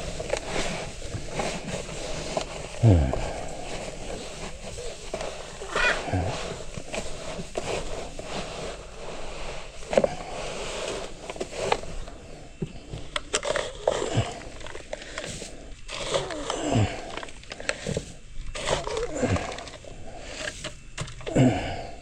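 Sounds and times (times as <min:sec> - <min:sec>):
rustling: 0:00.0 - 0:22.0
animal low calls: 0:02.1 - 0:07.2.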